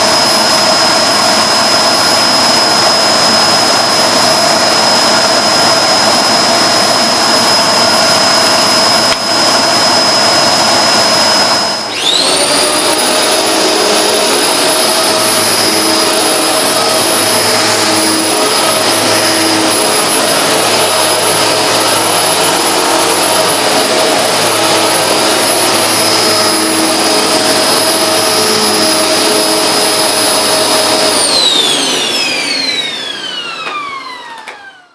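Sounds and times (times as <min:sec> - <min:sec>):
vacuum cleaner motor whine: 0:00.0 - 0:34.9.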